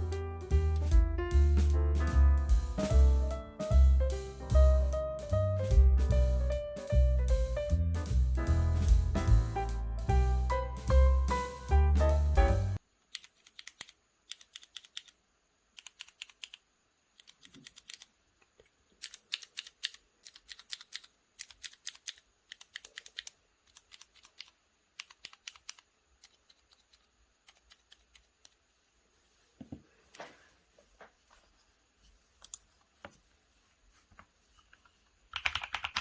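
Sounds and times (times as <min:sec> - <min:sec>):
intro music: 0:00.0 - 0:12.8
typing on mechanical keyboard: 0:13.1 - 0:15.2, 0:15.8 - 0:16.6, 0:17.2 - 0:18.1, 0:19.0 - 0:28.3, 0:35.3 - 0:36.0.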